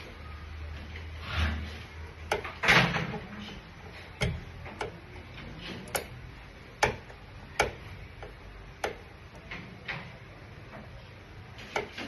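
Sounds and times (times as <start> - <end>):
faint steady hum: 0.0 - 12.0
sharp taps and clicks: 6.8 - 9.6.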